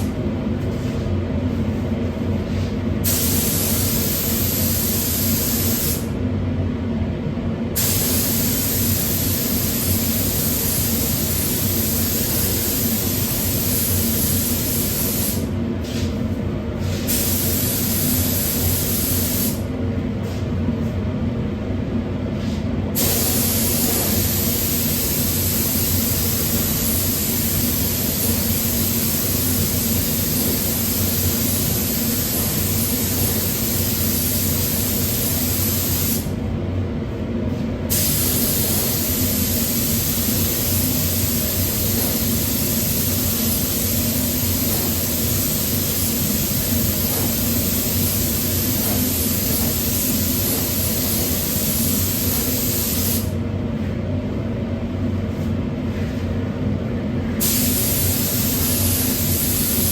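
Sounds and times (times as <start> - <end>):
low machine hum: 0.0 - 5.2, 8.5 - 35.6, 36.2 - 52.7
paint spray gun hissing: 3.0 - 6.1, 7.8 - 15.5, 17.1 - 19.6, 23.0 - 36.3, 37.9 - 53.3, 57.4 - 59.9.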